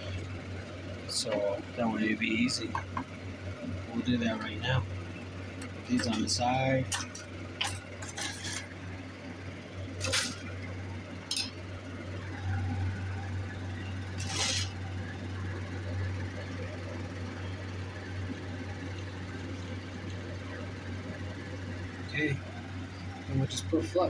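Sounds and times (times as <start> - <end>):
steady low hum: 0.0 - 24.0
metal pieces clinking: 6.9 - 8.7, 10.0 - 10.5, 11.3 - 11.6.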